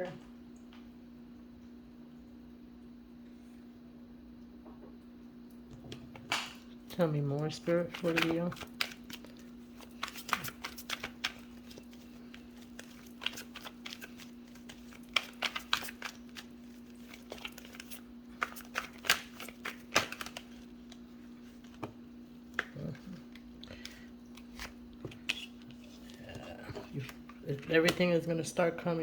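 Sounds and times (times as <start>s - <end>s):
cards shuffling and flicking: 7.6s - 28.2s.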